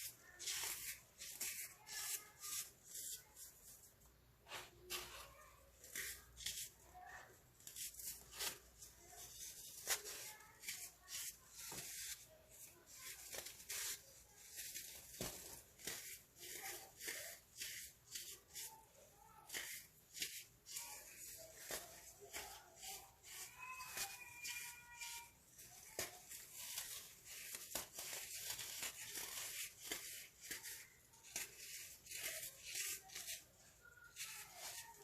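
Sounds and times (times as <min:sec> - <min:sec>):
baking soda crunching: 0:04.5 - 0:35.0.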